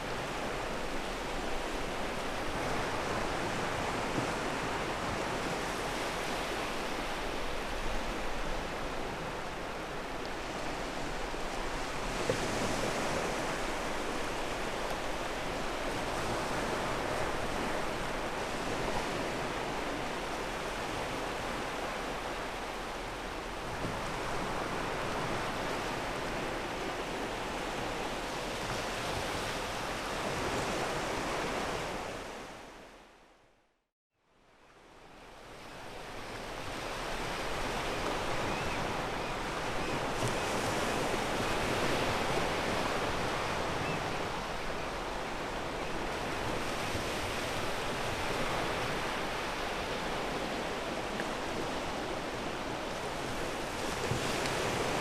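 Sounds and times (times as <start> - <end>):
waves on a pebble beach: 36.0 - 55.0.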